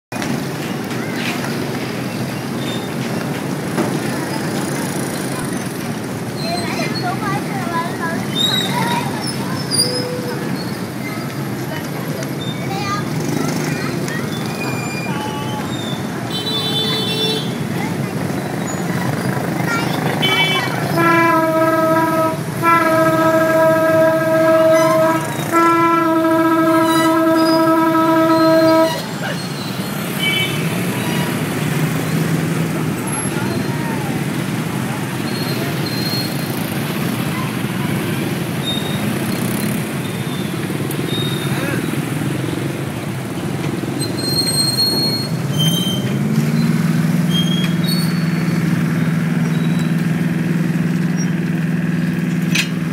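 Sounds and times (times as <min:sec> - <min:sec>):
high-pitched metallic squeals: 0:08.2 - 0:11.2, 0:14.3 - 0:16.1, 0:20.5 - 0:31.3, 0:44.0 - 0:48.8
low engine rumble: 0:17.5 - 0:52.9
ferry horn blasts: 0:20.0 - 0:31.4.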